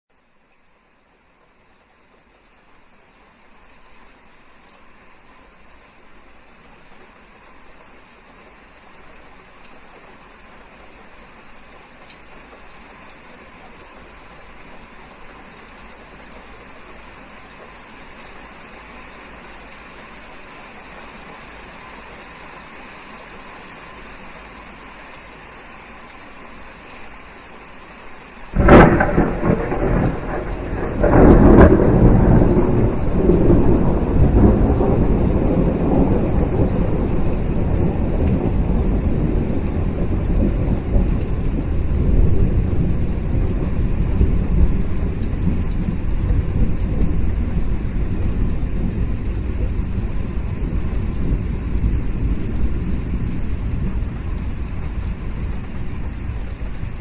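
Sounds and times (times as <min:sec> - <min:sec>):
rain hiss: 0:00.1 - 0:57.0
heavy thunder rumbling: 0:28.5 - 0:57.0
loud thunderclap: 0:28.6 - 0:53.9.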